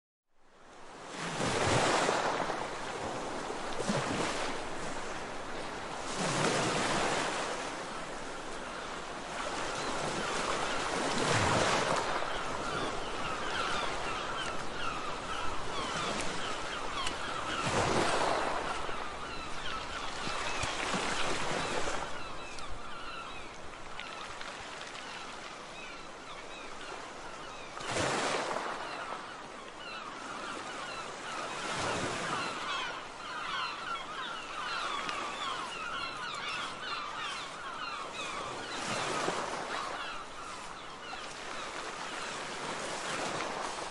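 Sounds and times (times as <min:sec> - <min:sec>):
ocean waves breaking on shore: 0:00.4 - 0:43.9.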